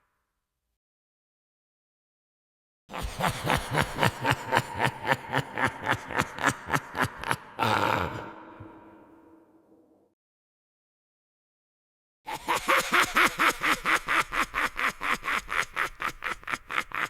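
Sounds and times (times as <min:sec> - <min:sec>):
high-pitched evil cackling laugh: 0:02.9 - 0:09.5, 0:12.3 - 0:17.0.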